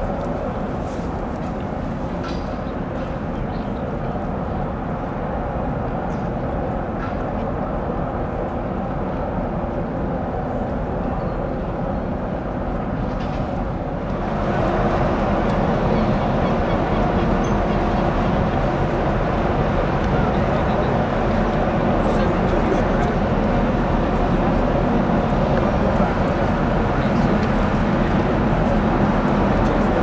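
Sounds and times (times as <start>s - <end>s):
wind: 0.0s - 30.0s
boat engine rumble: 14.2s - 30.0s.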